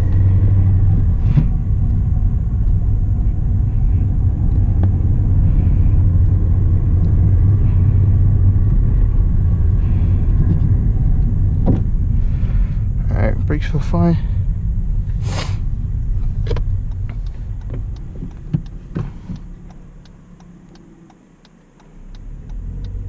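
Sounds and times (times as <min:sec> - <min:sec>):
car engine and road noise: 0:00.0 - 0:23.0
faint clicks: 0:16.5 - 0:23.0.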